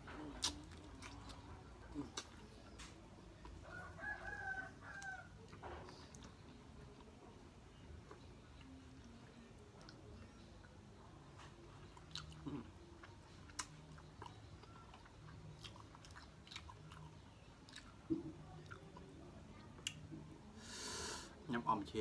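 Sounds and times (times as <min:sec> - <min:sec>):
wet chewing and mouth clicks: 0:00.2 - 0:03.6, 0:11.8 - 0:19.2.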